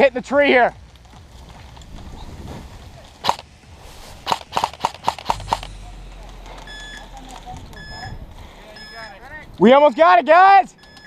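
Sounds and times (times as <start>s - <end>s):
airsoft gun shots: 3.2s - 3.5s, 4.2s - 5.8s.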